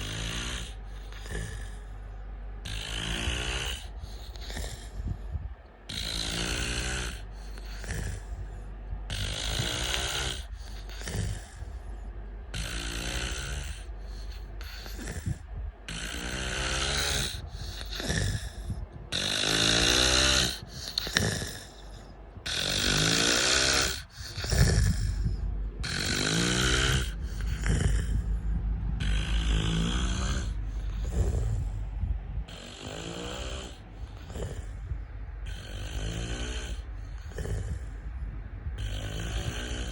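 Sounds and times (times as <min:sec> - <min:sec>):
man snoring: 0:00.0 - 0:02.0, 0:02.6 - 0:05.2, 0:05.9 - 0:08.5, 0:09.1 - 0:11.8, 0:12.5 - 0:31.8, 0:32.4 - 0:38.1, 0:38.7 - 0:39.9.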